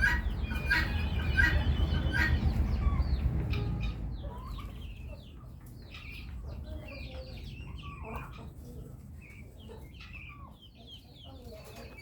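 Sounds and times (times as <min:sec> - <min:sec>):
low rumble: 0:00.0 - 0:05.4
chickens peeping and clucking: 0:00.0 - 0:12.0.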